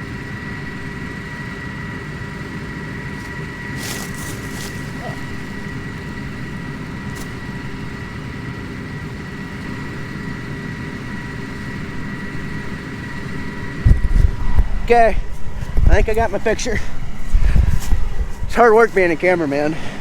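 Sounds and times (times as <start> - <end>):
high-pitched machine whine: 0.0 - 15.1
combine harvester drone: 0.0 - 20.0.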